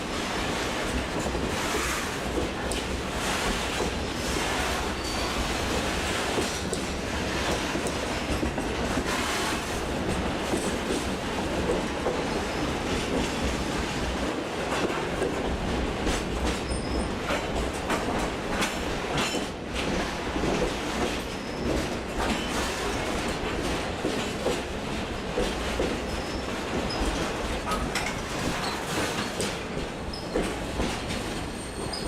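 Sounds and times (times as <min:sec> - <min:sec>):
train wheels rumbling on rail: 0:00.0 - 0:32.0
wheels clacking over rail joints: 0:14.7 - 0:24.7.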